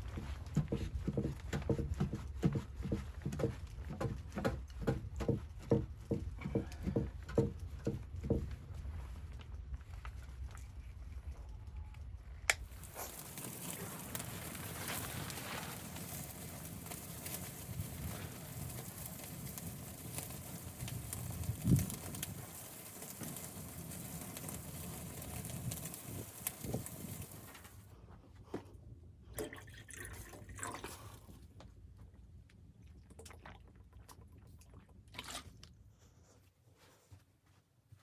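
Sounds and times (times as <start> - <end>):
liquid crackling and dripping: 12.5 - 27.9, 29.4 - 31.6, 32.5 - 35.8.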